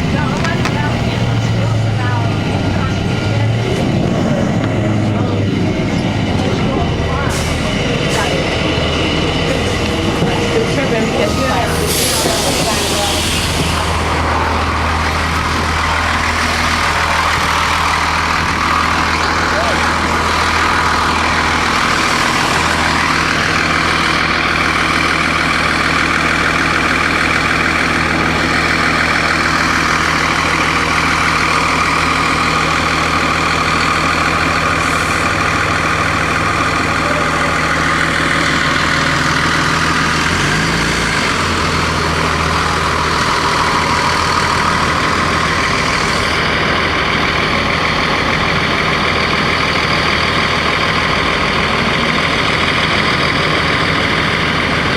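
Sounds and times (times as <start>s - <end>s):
diesel bus engine running: 0.0s - 54.9s.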